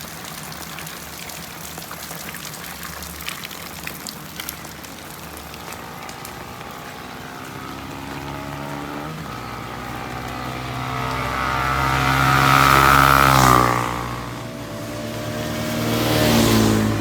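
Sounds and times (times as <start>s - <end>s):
water drips and splashes: 0.0s - 17.0s
truck engine approaching: 4.6s - 17.0s
heavy rain hissing: 4.7s - 17.0s.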